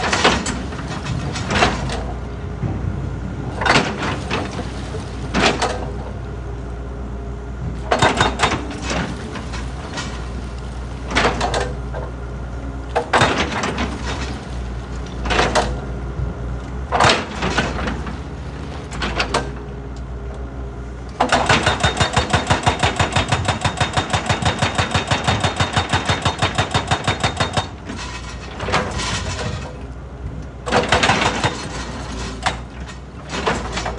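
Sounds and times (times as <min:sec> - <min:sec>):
rock crusher machinery humming: 0:00.0 - 0:33.9.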